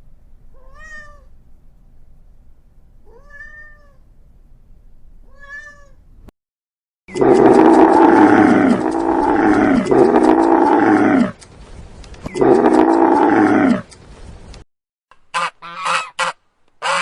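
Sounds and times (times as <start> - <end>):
large animal calling: 7.1 - 11.4, 12.3 - 13.9.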